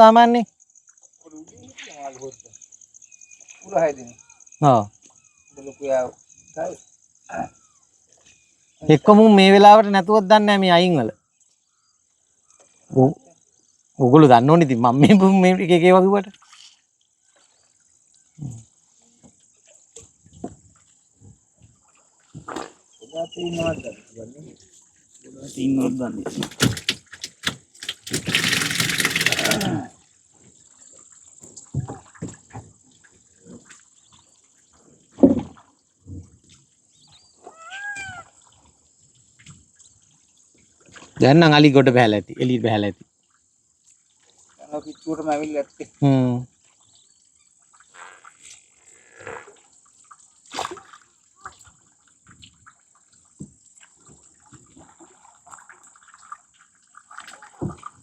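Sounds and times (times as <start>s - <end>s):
steady high-pitched hiss: 0.0s - 7.4s
short thumps: 26.3s - 29.7s
water splashing and dripping: 26.3s - 29.8s, 49.9s - 51.8s, 52.6s - 58.0s.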